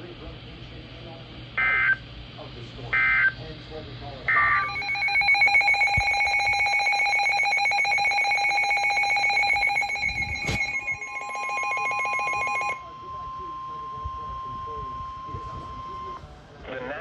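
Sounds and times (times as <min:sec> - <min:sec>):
data burst tones: 0:04.3 - 0:16.2
two-tone attention signal: 0:04.3 - 0:16.2
higher steady tone: 0:04.4 - 0:16.2.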